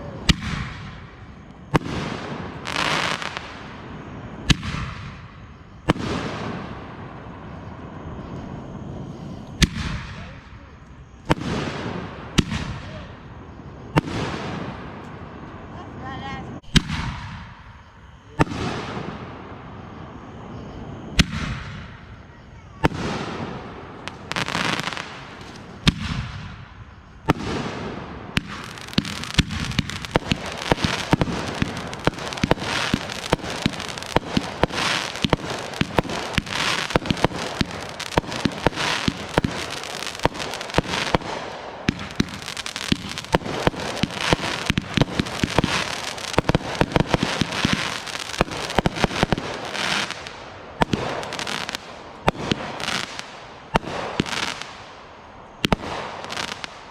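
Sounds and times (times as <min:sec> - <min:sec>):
firework bangs: 0:00.0 - 0:15.8, 0:16.6 - 0:56.9
crackling firework pops: 0:04.4 - 0:06.6, 0:21.1 - 0:22.1, 0:22.8 - 0:26.6, 0:27.2 - 0:55.0, 0:55.6 - 0:56.9.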